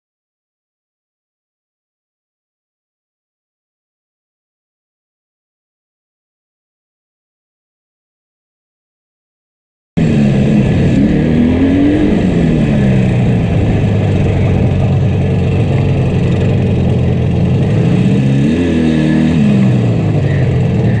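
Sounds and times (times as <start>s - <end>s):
misfiring two-stroke engine revving: 10.0s - 21.0s.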